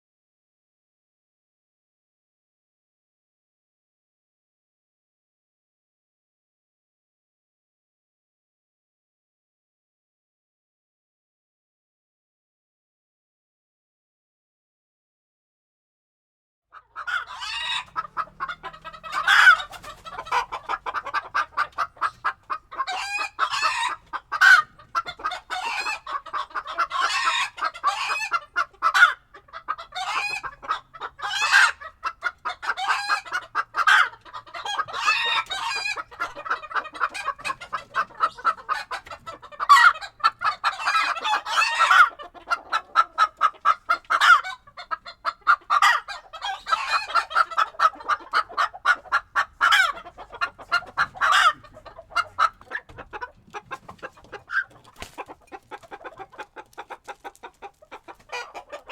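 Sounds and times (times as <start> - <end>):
chickens clucking: 16.8 - 58.9.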